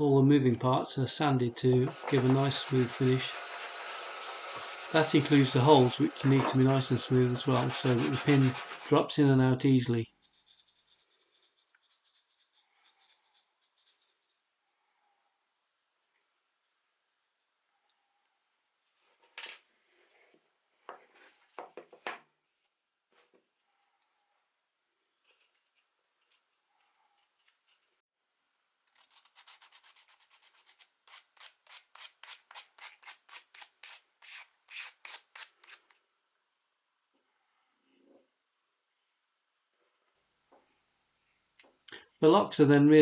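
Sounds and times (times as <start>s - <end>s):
hand sanding wood: 1.8s - 9.1s.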